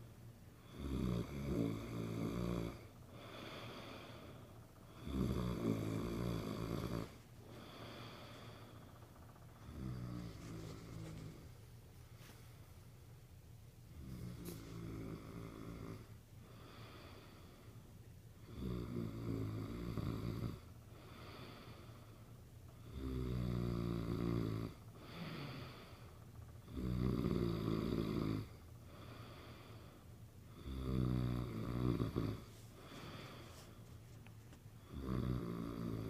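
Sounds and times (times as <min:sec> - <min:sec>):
man snoring: 0:00.6 - 0:08.9, 0:09.6 - 0:11.5, 0:13.9 - 0:17.8, 0:18.4 - 0:22.1, 0:22.8 - 0:33.5, 0:34.8 - 0:36.0
breathing: 0:03.0 - 0:05.1, 0:07.0 - 0:13.1, 0:16.0 - 0:18.6, 0:20.8 - 0:22.5, 0:24.9 - 0:26.5, 0:28.5 - 0:30.7, 0:32.3 - 0:35.1.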